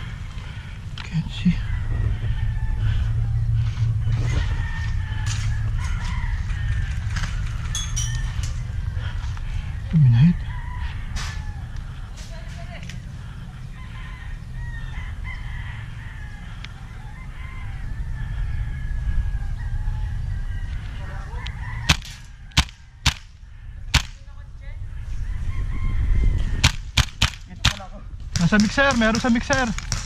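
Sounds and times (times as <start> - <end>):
roosters crowing: 0.0 - 24.1, 24.7 - 30.0
low rumble: 0.0 - 30.0
airsoft gun shots: 21.9 - 23.3, 26.6 - 30.0.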